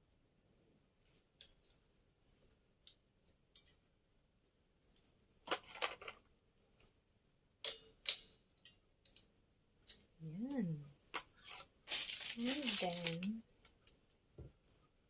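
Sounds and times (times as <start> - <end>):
small objects clicking and crackling: 11.1 - 14.0.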